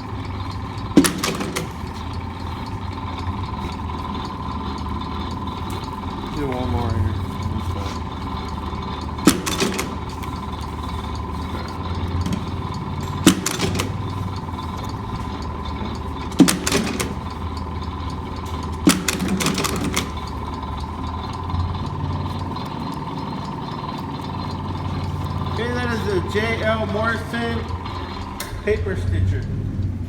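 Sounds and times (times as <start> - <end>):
mechanical clatter: 0.0 - 30.0
stitching machine humming: 0.0 - 30.0
stapler head clacking: 0.9 - 2.2, 7.7 - 26.7.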